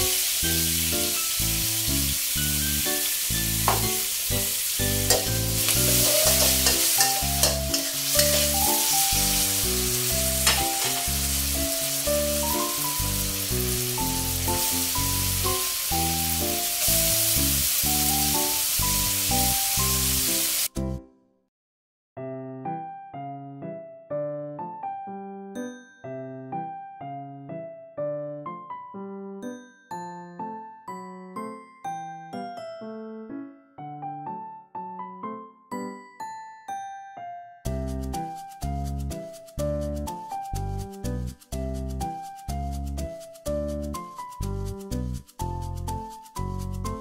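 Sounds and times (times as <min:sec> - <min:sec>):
food sizzling in a hot pan: 0:00.0 - 0:20.7
light background music: 0:00.0 - 0:21.0, 0:22.8 - 0:47.0
spatula clicking against pan: 0:06.0 - 0:08.4.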